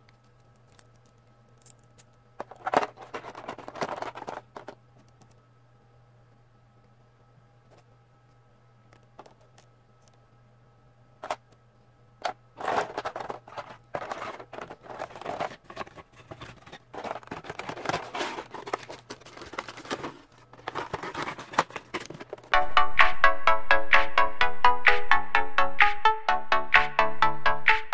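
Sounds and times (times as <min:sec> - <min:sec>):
packaging crinkling and rustling: 0:02.4 - 0:04.8, 0:12.2 - 0:22.5.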